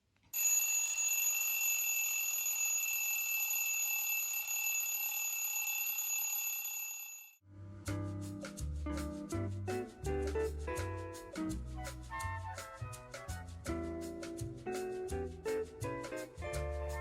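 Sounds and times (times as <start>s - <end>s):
music: 7.6s - 17.0s.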